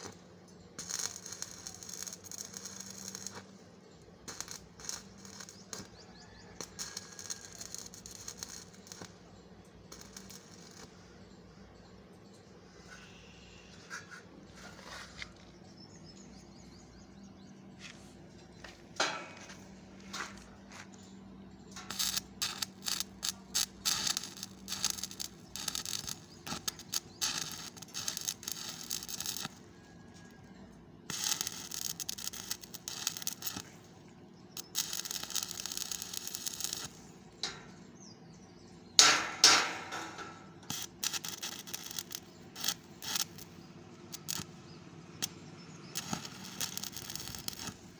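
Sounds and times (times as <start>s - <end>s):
arc welding crackling: 0.0s - 11.4s, 21.7s - 47.9s.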